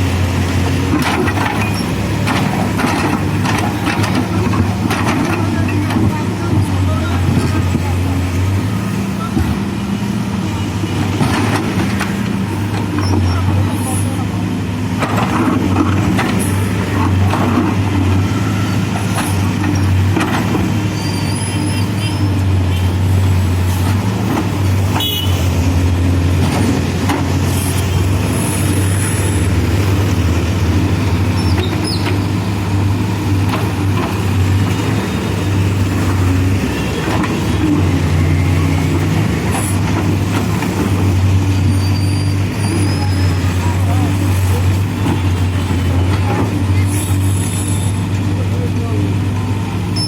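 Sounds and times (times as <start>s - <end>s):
diesel engine droning: 0.0s - 50.0s.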